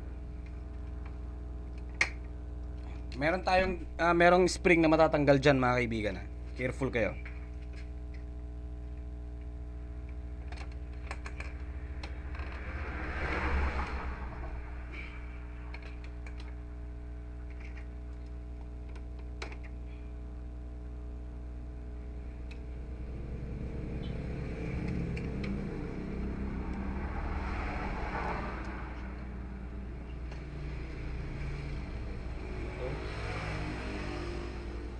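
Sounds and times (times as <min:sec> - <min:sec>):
steady low hum: 0:00.0 - 0:34.9
rushing swell: 0:11.7 - 0:15.8, 0:23.1 - 0:34.7.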